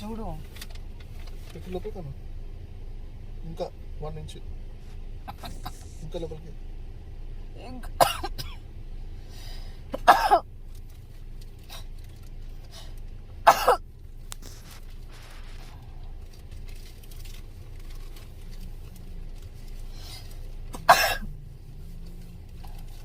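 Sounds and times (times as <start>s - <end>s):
person coughing: 5.3s - 6.0s, 8.0s - 8.6s, 10.0s - 10.4s, 13.5s - 13.8s, 20.7s - 21.4s.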